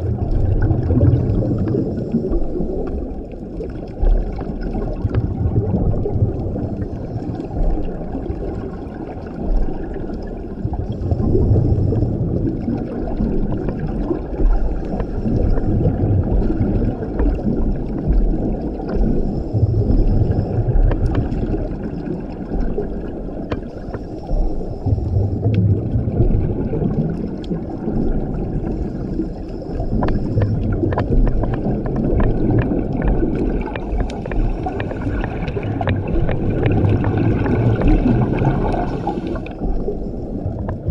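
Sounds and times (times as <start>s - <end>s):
bubbles rumbling and gurgling: 0.0s - 40.9s
regulator breath hissing: 38.6s - 39.6s.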